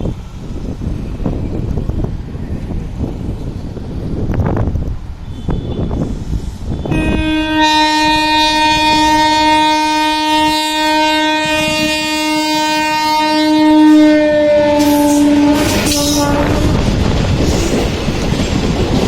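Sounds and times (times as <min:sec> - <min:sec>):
train rushing: 0:00.0 - 0:19.0
train air horn blast: 0:05.3 - 0:16.9.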